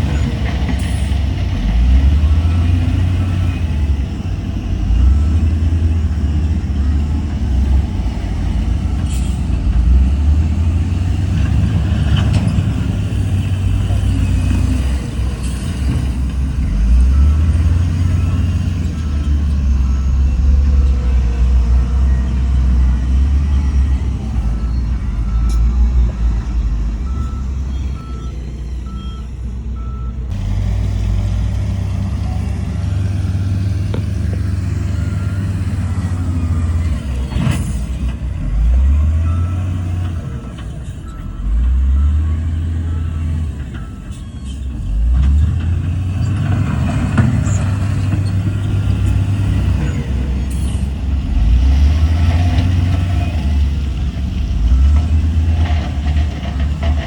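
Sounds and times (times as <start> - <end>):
heavy diesel engines working: 0.0 - 57.0
reversing alarm beeping: 16.6 - 30.2.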